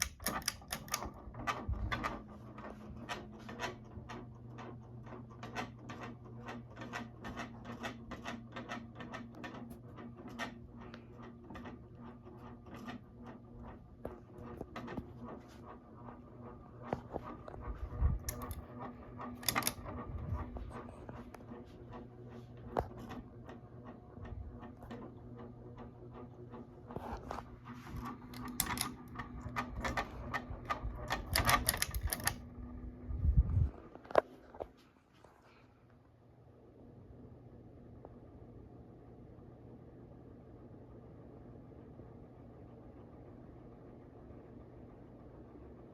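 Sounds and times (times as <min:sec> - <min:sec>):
rapid uneven fan clicking: 0:00.0 - 0:34.6
ceiling fan motor hum: 0:00.0 - 0:45.9
low rumble: 0:16.4 - 0:21.6, 0:32.5 - 0:34.0.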